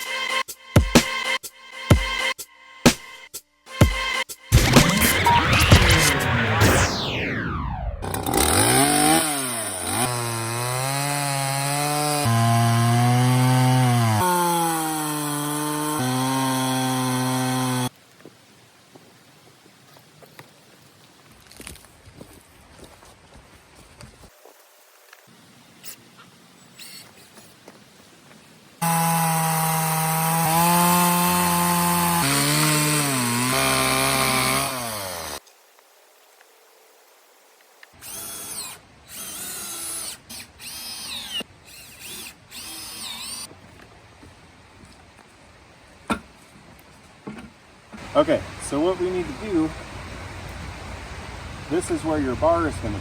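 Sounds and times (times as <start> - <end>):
chainsaw engine cutting a log: 8.0 - 17.9, 28.8 - 35.4, 38.0 - 43.5.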